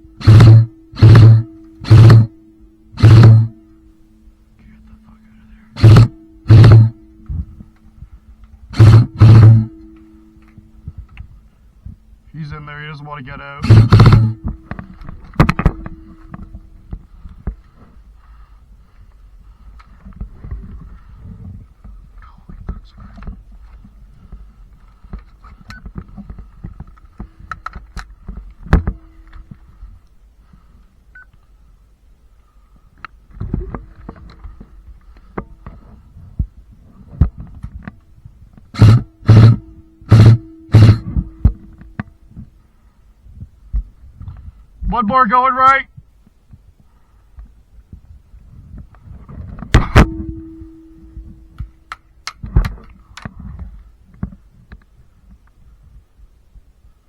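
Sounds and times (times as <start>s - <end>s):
steady ringing tone: 0.0s - 19.6s, 28.3s - 31.4s, 38.8s - 42.6s, 49.8s - 52.2s
airsoft gun shots: 5.8s - 6.9s, 8.8s - 9.7s, 13.6s - 14.4s, 38.8s - 41.2s
sharp clicks or knocks: 5.8s - 7.5s, 8.7s - 11.3s, 13.6s - 17.7s, 38.8s - 42.1s
body-worn microphone rustling: 13.6s - 30.8s, 32.4s - 44.8s, 46.0s - 51.8s.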